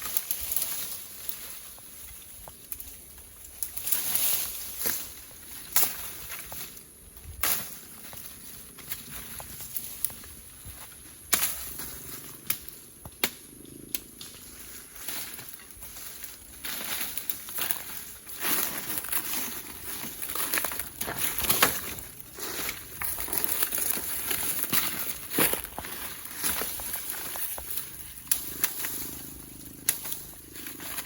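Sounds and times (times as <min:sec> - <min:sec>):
dry leaves crackling and rustling: 0:00.0 - 0:12.5, 0:14.4 - 0:31.0
insect hiss: 0:00.0 - 0:31.0
twigs snapping: 0:03.6 - 0:06.6, 0:16.9 - 0:31.0.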